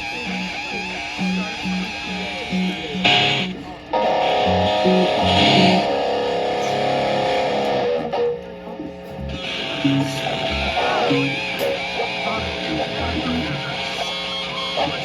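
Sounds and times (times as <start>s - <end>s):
bass guitar: 0.0s - 8.2s, 9.1s - 13.9s
electric guitar chords: 0.0s - 15.0s.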